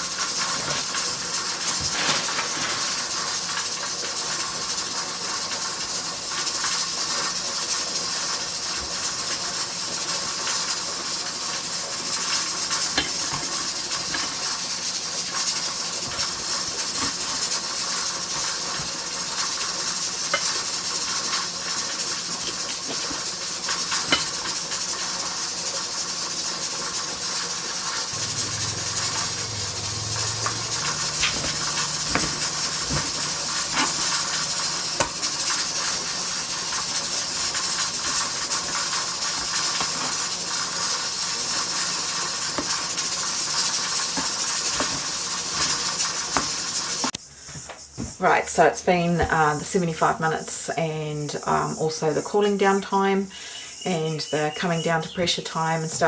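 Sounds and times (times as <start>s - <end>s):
steam hissing from pressure canner: 0.0s - 47.6s
kitchen utensils clinking: 0.1s - 5.0s, 11.9s - 24.9s, 28.2s - 47.2s
low hum: 28.2s - 34.9s.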